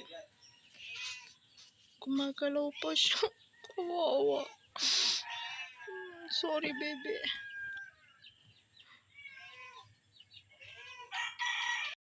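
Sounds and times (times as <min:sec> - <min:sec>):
rooster crowing: 0:05.2 - 0:08.3, 0:10.7 - 0:12.0.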